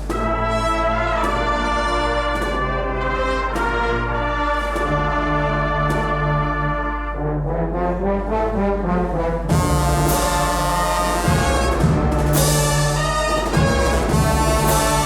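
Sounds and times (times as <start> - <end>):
brass band playing march: 0.0 - 15.0.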